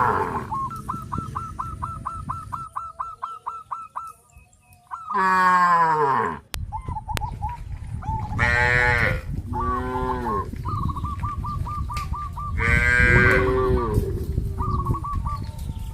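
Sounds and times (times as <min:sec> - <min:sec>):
cows mooing: 0:00.0 - 0:00.6, 0:05.1 - 0:06.6, 0:08.4 - 0:10.6, 0:12.6 - 0:14.3.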